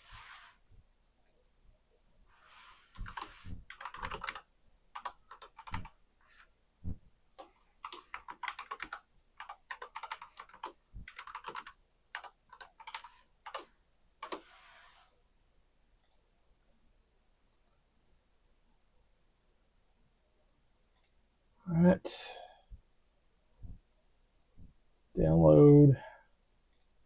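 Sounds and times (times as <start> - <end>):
computer keyboard typing: 3.0 - 6.0, 7.4 - 14.4.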